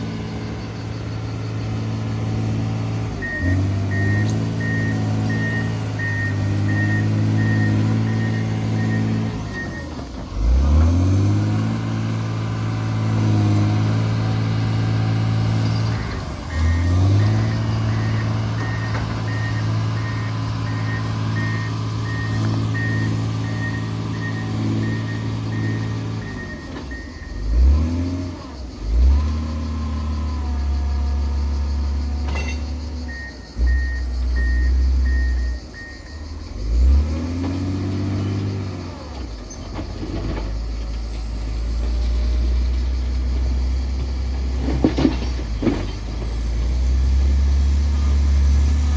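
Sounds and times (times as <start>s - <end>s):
diesel engine working: 0.0s - 48.9s
reversing alarm beeping: 0.2s - 10.0s, 15.4s - 27.6s, 32.3s - 37.2s.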